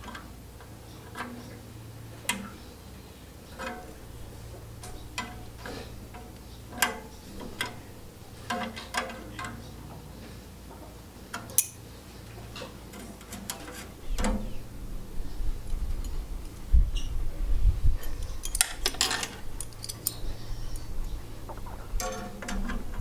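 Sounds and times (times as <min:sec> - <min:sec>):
metallic clicks of tools: 0:11.3 - 0:11.8, 0:18.1 - 0:21.2
low rumble: 0:14.6 - 0:18.8.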